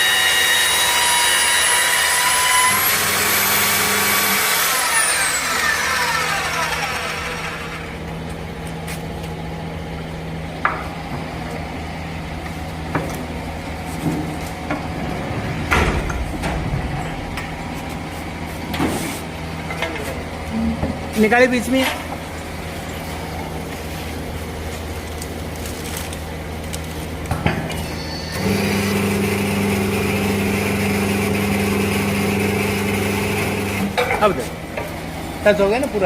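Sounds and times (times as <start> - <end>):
electric motor whining: 1.6 - 8.1, 27.8 - 34.0.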